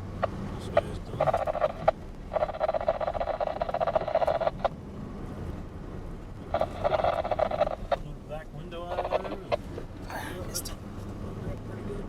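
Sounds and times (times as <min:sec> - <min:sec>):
truck rumble: 0:00.0 - 0:12.0
garbled radio transmissions: 0:00.2 - 0:04.7, 0:06.4 - 0:10.8
radio clicks: 0:00.2 - 0:04.7, 0:06.5 - 0:08.0, 0:08.8 - 0:09.7.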